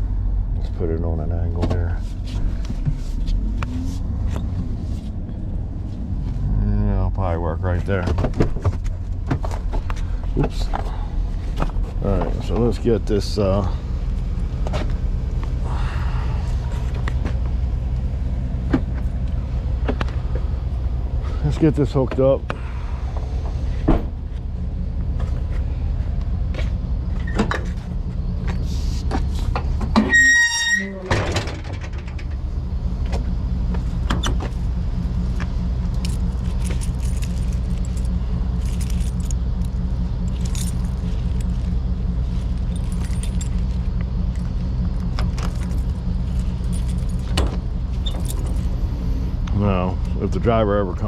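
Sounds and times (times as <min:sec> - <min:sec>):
truck engine idling: 0:00.0 - 0:51.0
metallic clinks of cables: 0:35.4 - 0:44.5.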